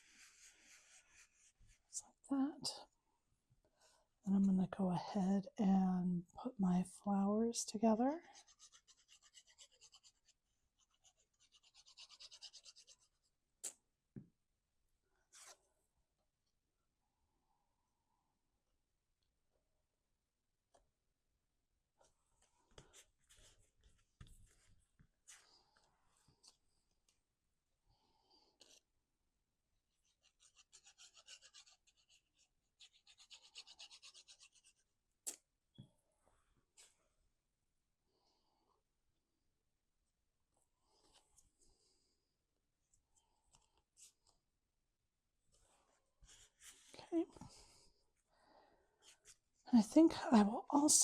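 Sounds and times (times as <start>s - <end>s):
rubbing strokes on paper: 0.0s - 1.9s, 8.2s - 13.3s, 30.0s - 34.9s
paper rubbing: 30.0s - 34.8s.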